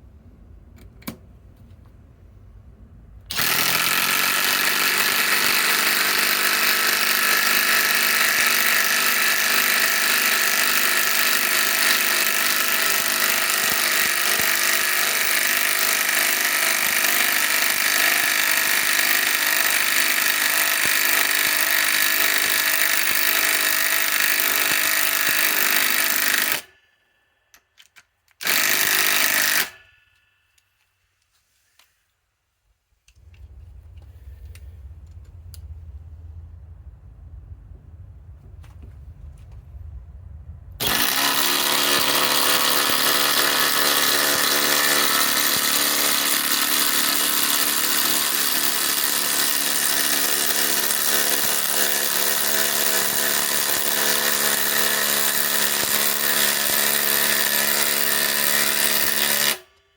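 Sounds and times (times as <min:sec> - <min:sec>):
impact driver hammering: 0:03.3 - 0:26.7, 0:28.4 - 0:29.9, 0:40.8 - 0:59.7.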